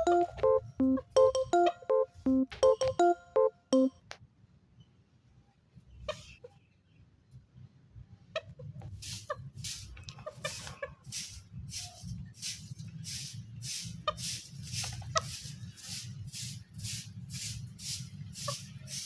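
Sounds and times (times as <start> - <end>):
chicken clucking: 8.3 - 11.9, 14.0 - 16.0.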